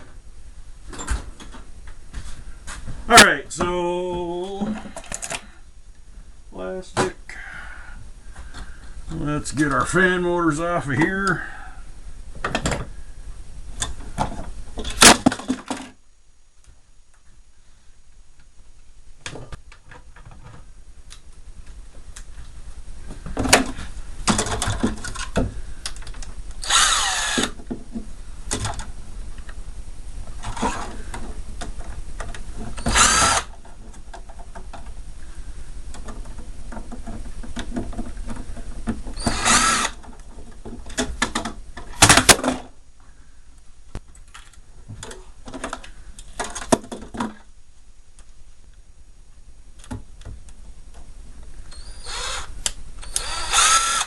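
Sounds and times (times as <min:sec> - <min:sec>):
clicks and clatter of parts: 0:04.5 - 0:05.5
power drill running: 0:26.6 - 0:27.6, 0:32.8 - 0:33.6, 0:39.2 - 0:40.0, 0:51.7 - 0:54.0.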